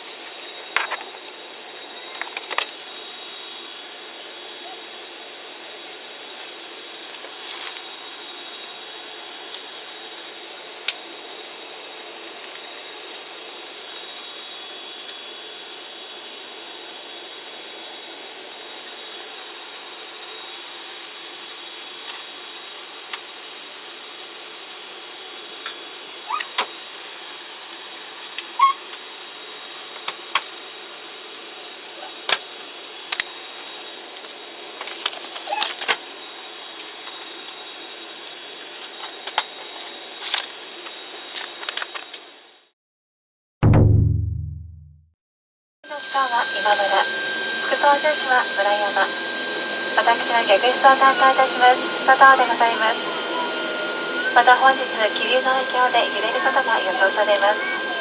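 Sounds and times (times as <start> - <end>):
thin high whine: 45.9 - 58.0
aircraft cabin hum: 46.2 - 58.0.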